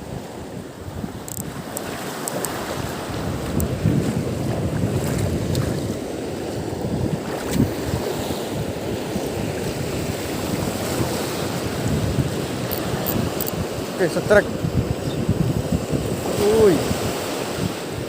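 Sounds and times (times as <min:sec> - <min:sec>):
waves washing: 0:00.0 - 0:18.0
wind buffeting microphone: 0:00.0 - 0:18.0
faint ticks: 0:01.3 - 0:02.6, 0:12.7 - 0:13.6.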